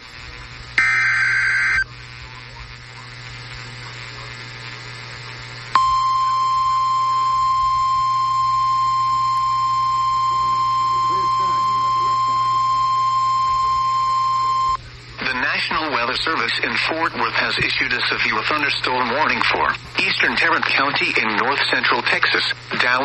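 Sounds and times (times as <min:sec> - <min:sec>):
radio hiss: 0:00.0 - 0:23.0
steady single-pitch alarm tone: 0:00.8 - 0:01.8, 0:05.8 - 0:14.8
digital data tones burst: 0:05.8 - 0:14.8.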